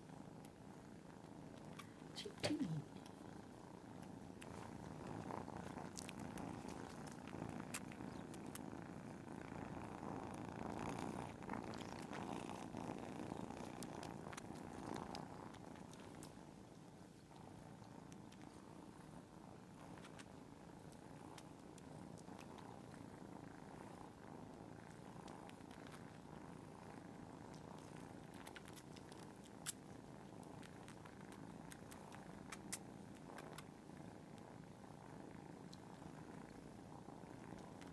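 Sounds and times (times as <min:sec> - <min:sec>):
cats purring: 0:00.0 - 0:37.9.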